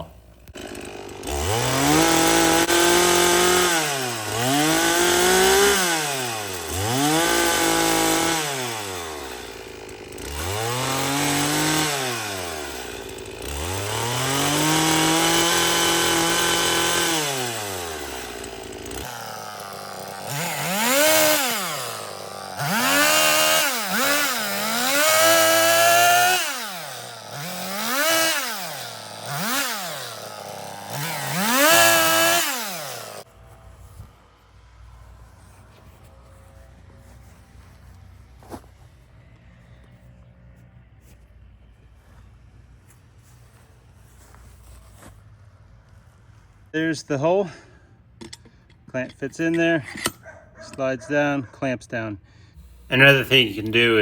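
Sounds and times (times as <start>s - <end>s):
chainsaw cutting wood: 0.0s - 38.7s, 52.6s - 54.0s.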